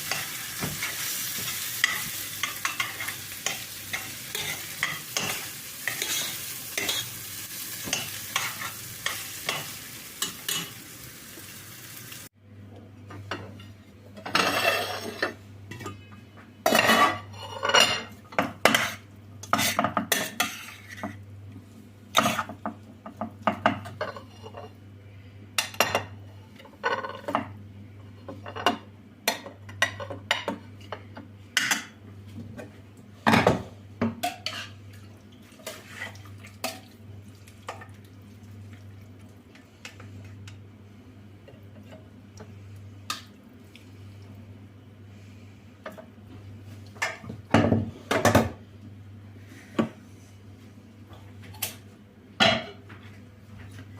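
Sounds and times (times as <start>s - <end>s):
dishes and cutlery clinking: 13.2s - 16.1s.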